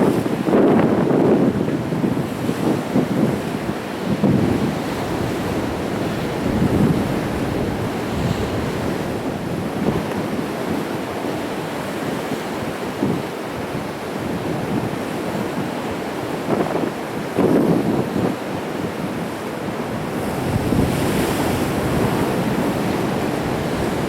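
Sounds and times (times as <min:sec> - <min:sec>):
sea waves washing against rocks: 0:00.0 - 0:24.0.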